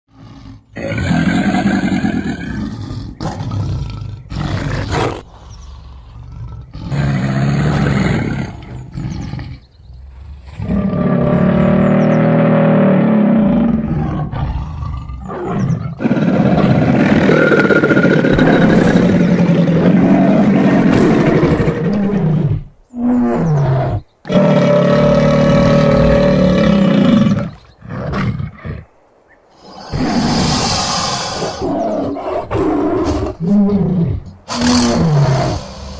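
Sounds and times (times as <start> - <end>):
creature roars and growls: 10.2 - 28.8, 29.6 - 35.9.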